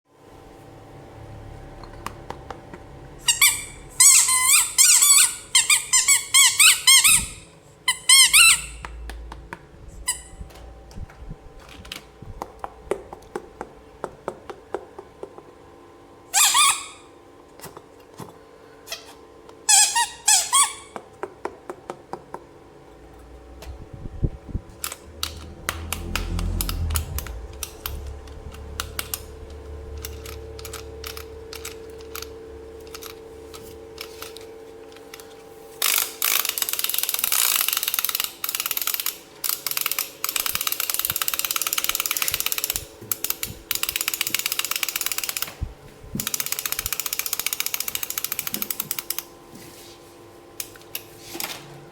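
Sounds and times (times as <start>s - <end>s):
high-pitched squeaking: 3.2s - 8.8s.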